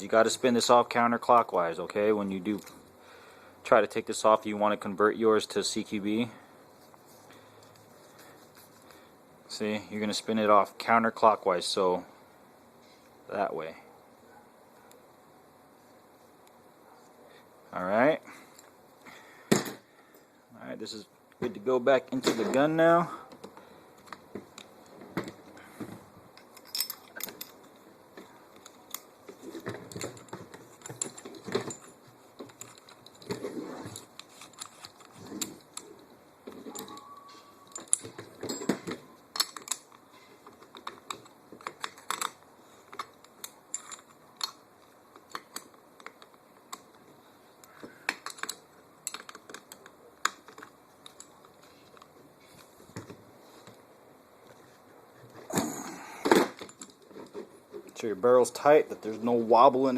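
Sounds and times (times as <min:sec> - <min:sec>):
metal rifle parts clicking and clinking: 0:02.5 - 0:02.9, 0:26.3 - 0:47.0, 0:47.7 - 0:52.2, 0:56.3 - 0:58.7.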